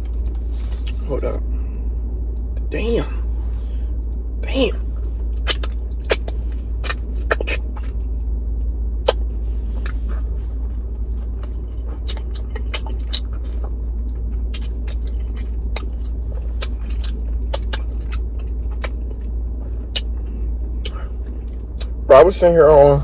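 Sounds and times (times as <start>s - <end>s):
steady low rumble: 0.0s - 23.0s
wet chewing smacks: 5.5s - 8.0s, 11.3s - 22.0s.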